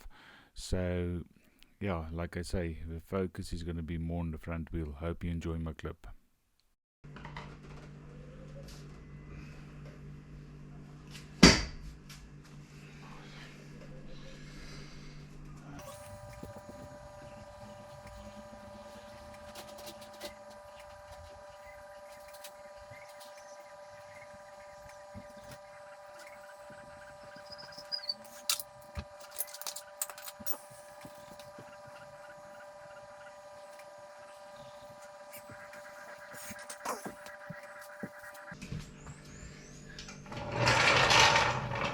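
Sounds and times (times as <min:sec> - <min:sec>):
steady hum: 0:08.0 - 0:41.9.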